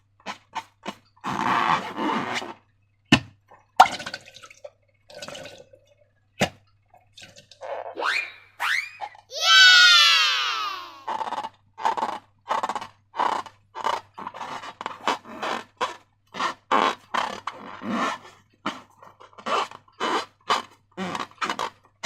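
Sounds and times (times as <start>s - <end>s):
balloon squealing: 7.6s - 11.4s.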